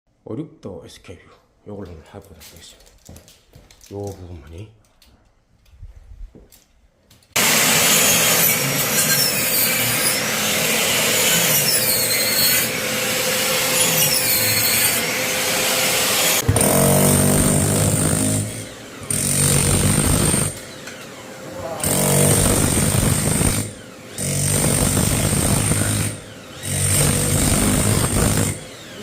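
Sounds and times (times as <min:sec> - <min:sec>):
power saw cutting wood: 0:07.4 - 0:29.0.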